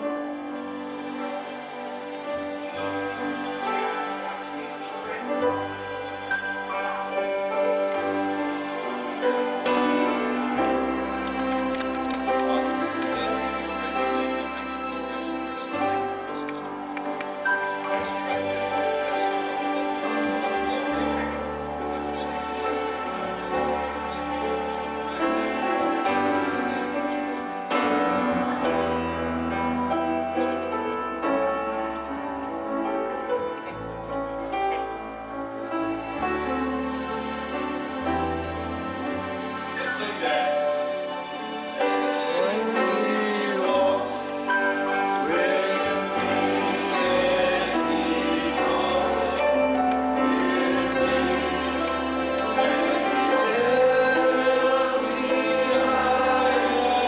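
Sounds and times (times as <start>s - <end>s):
gospel singing with accompaniment: 41.1s - 57.0s.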